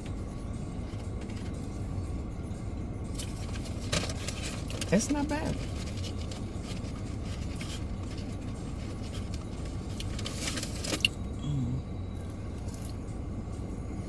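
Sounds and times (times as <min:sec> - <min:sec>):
rustling and handling noises: 0:03.2 - 0:11.1.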